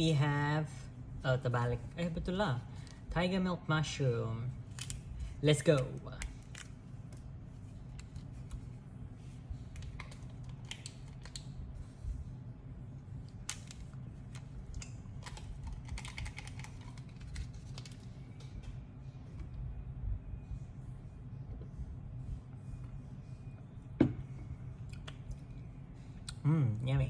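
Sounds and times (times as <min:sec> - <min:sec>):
steady low hum: 0:00.0 - 0:27.0
packaging crinkling and clicking: 0:14.4 - 0:18.5.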